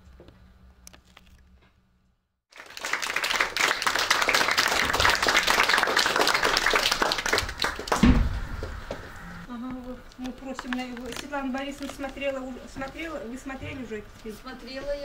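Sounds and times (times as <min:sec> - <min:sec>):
audience applauding: 0:02.5 - 0:09.0
low bump: 0:07.8 - 0:09.5.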